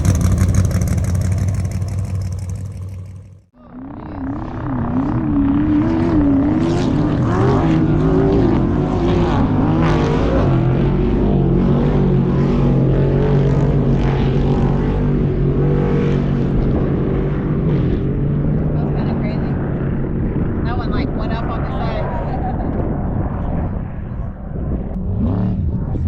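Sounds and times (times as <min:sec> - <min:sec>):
race vehicle engine revving: 0:00.0 - 0:03.5.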